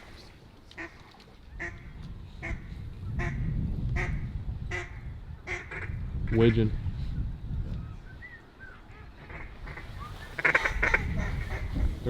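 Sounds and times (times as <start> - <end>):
duck quacking: 8.9 - 11.8.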